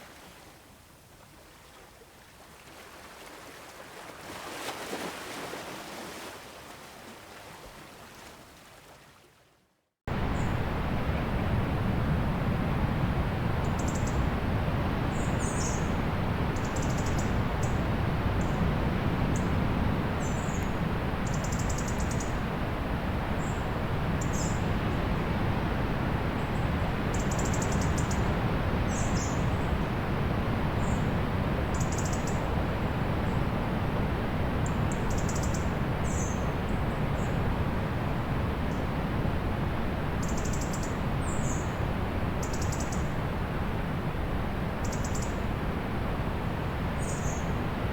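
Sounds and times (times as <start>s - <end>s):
ocean surf: 10.1s - 21.3s.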